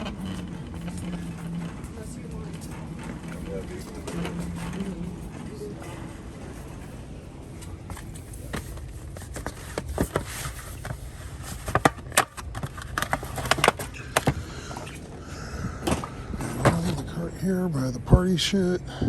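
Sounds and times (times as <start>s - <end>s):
shopping cart rolling and rattling: 0.0s - 14.5s.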